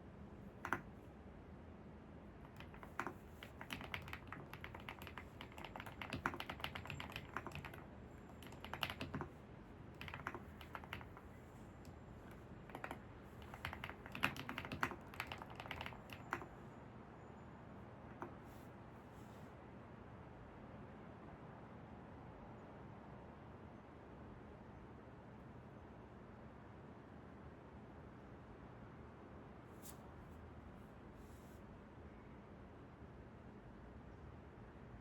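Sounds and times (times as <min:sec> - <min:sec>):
computer keyboard typing: 0:00.6 - 0:00.9, 0:02.5 - 0:16.6, 0:18.1 - 0:18.4.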